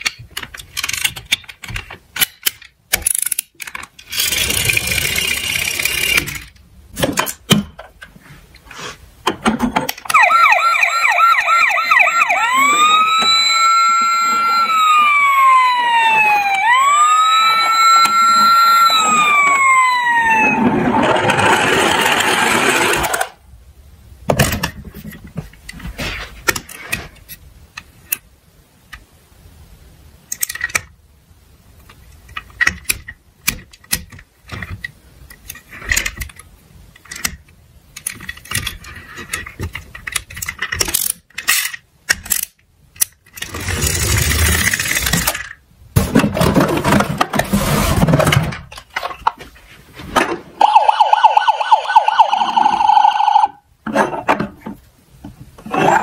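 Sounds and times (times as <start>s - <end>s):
toy cars rolling rattle: 3.0s - 6.6s, 20.6s - 23.4s, 38.0s - 49.2s.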